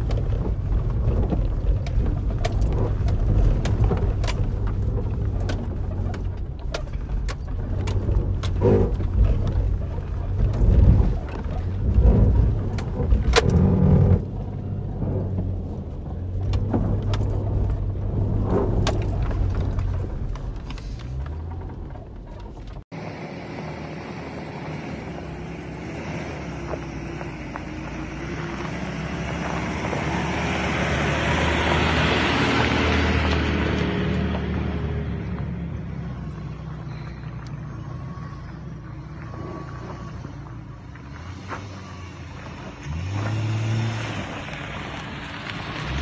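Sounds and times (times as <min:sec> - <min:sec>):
knocks and rattles from car body: 0:00.0 - 0:22.9
car engine running: 0:00.0 - 0:46.0.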